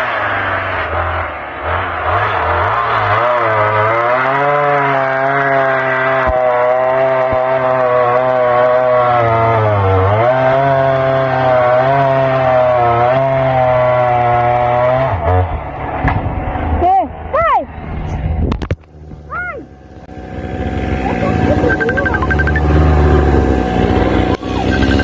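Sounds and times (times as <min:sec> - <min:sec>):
chainsaw running: 0:01.8 - 0:15.2.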